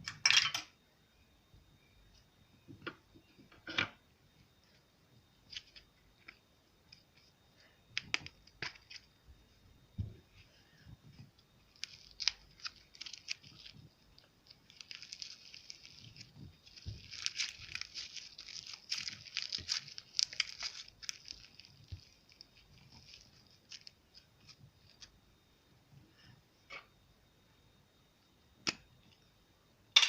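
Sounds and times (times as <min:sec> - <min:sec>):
slime crackling and popping: 0:11.6 - 0:25.1.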